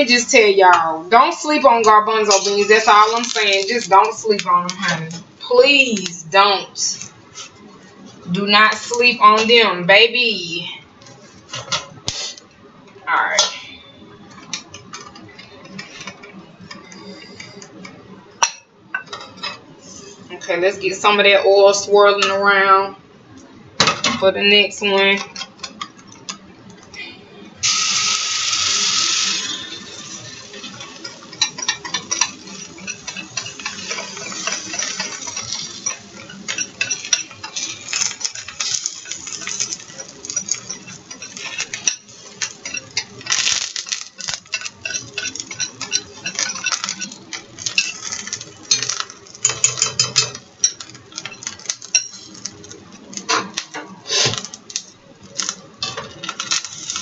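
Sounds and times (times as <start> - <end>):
utensil clinking and scraping pan: 1.5 - 5.1, 29.1 - 54.5
hot oil hissing in a frying pan: 27.6 - 53.4, 56.3 - 57.0.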